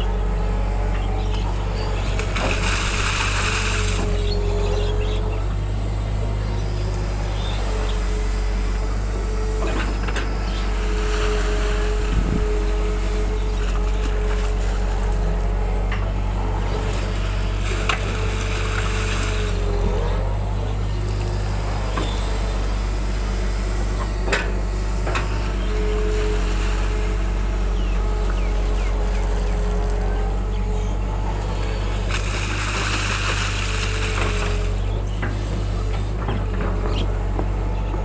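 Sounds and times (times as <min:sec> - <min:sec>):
diesel engine running: 0:00.0 - 0:38.0
hydraulic whine: 0:00.0 - 0:38.0.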